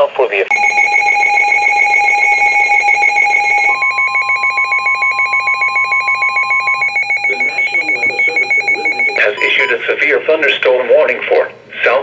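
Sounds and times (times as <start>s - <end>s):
fast pulsing beep: 0.5s - 9.9s
steady held alarm tone: 0.5s - 10.0s.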